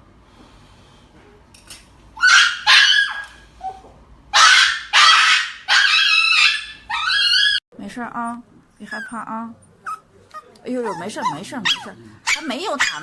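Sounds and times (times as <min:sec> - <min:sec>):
dog screaming: 0:02.2 - 0:03.4, 0:04.3 - 0:07.6, 0:09.9 - 0:13.0.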